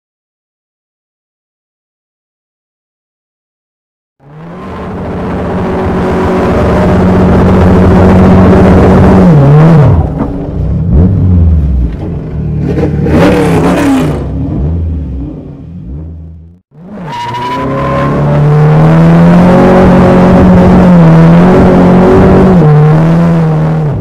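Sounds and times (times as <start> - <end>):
rush of noise: 4.2 - 23.1
car engine revving: 4.2 - 24.0.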